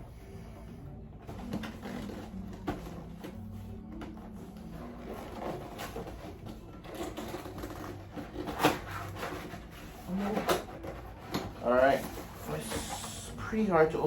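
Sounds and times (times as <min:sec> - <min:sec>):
cardboard box scraping and rustling: 0:04.4 - 0:13.5.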